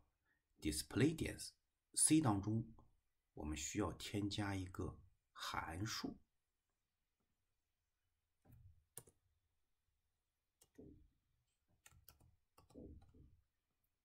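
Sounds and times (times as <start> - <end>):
faint keystrokes on computer keyboard: 11.8 - 13.3.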